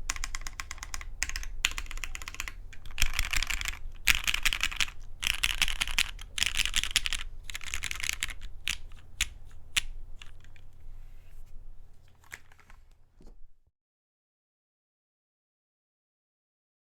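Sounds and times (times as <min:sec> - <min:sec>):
typing on mechanical keyboard: 0:00.0 - 0:10.7.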